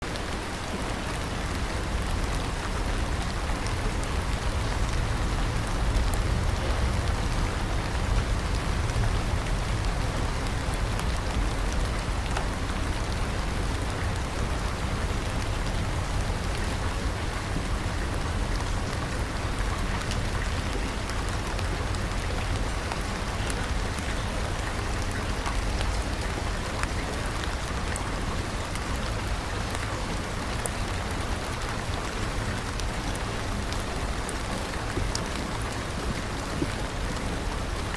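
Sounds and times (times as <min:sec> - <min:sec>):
rain drops ticking: 0:00.0 - 0:37.9
steady rain hiss: 0:00.0 - 0:37.9
deep low rumble: 0:02.9 - 0:12.2.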